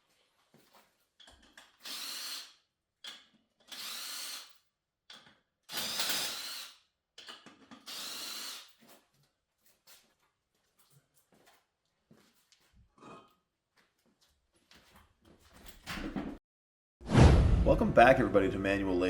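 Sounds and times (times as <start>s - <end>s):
power drill spinning: 1.6s - 2.6s, 3.6s - 4.6s, 5.7s - 6.8s, 7.7s - 8.9s.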